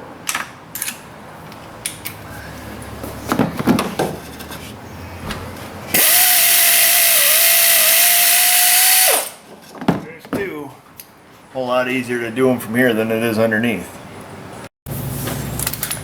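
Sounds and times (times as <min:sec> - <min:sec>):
power tool whining: 0:05.9 - 0:09.4.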